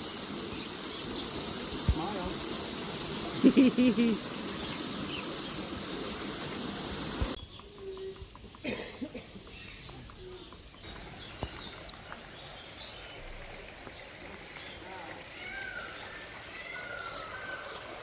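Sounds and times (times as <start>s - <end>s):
faint bird chirps: 0.0s - 2.1s, 4.4s - 6.5s, 7.3s - 18.0s
high insect buzz: 0.0s - 7.4s.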